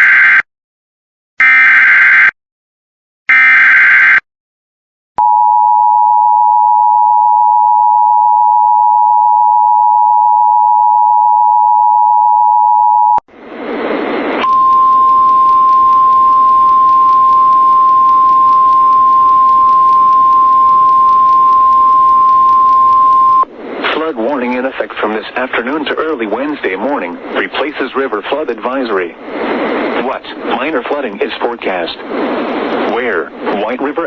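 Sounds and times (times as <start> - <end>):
radio static: 13.6 - 34.0.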